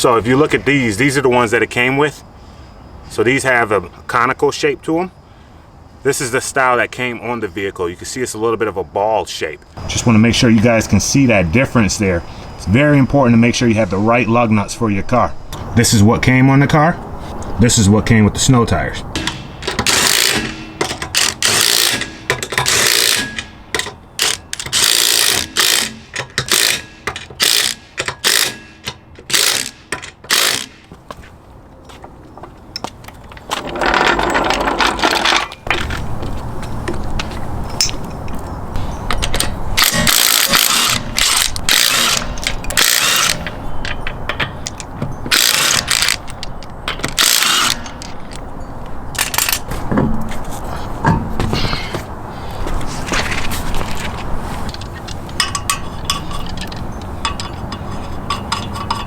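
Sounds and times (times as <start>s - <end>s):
impact wrench rattling bursts: 19.2s - 30.9s, 39.4s - 48.2s.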